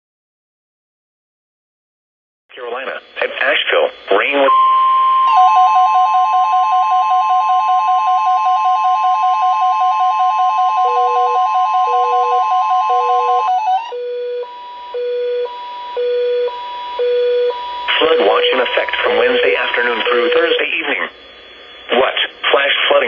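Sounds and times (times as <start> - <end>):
steady warning alert tone: 4.1 - 21.1
fast warbling alarm beep: 4.4 - 20.7
lower pulsing alarm beep: 4.4 - 20.7
alternating high and low beeps: 4.4 - 20.9.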